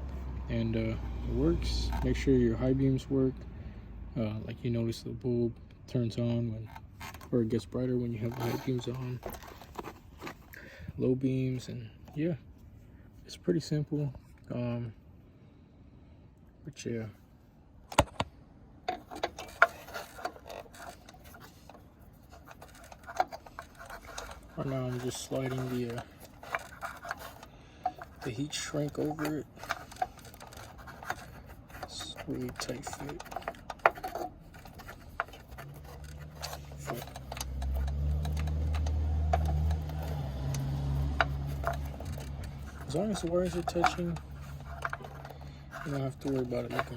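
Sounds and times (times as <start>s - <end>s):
low steady rumble: 0.0s - 46.9s
wires and tubing clicking and rustling: 6.6s - 10.6s, 18.9s - 46.9s.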